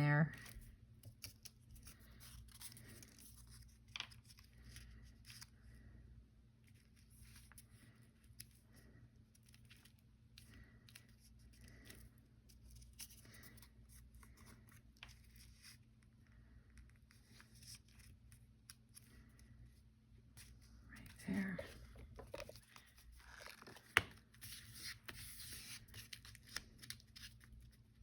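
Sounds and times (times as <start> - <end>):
paper rustling: 21.7 - 28.0.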